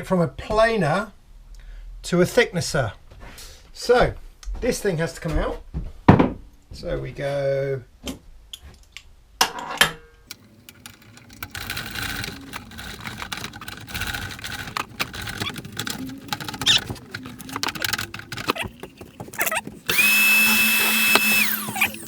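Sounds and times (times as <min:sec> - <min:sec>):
parts clicking and clattering: 0:10.3 - 0:22.0
power tool motor whining: 0:10.3 - 0:22.0.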